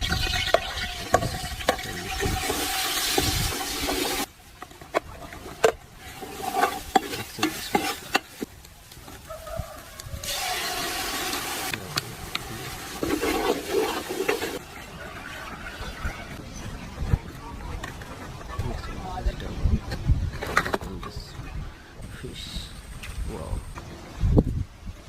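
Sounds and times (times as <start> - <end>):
pan hissing: 0.0 - 4.3, 10.2 - 14.6.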